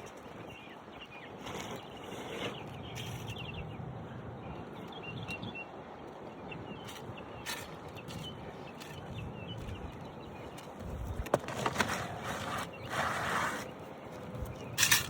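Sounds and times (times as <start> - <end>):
scraping noises: 11.2 - 13.8.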